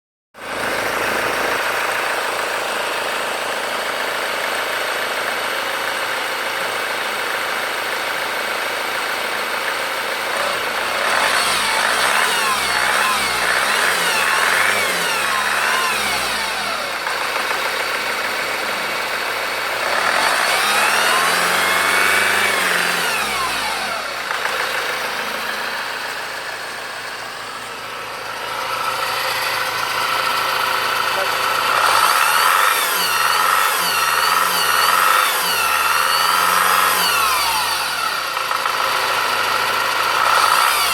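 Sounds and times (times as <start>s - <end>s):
diesel engine idling and revving: 0.4s - 40.9s
engine whine: 10.3s - 40.9s.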